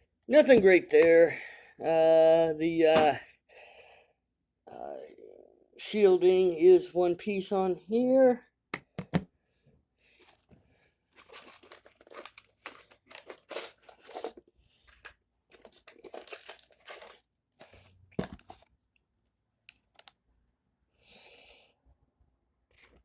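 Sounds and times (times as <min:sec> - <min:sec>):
plastic packaging crinkling: 0:11.1 - 0:17.3.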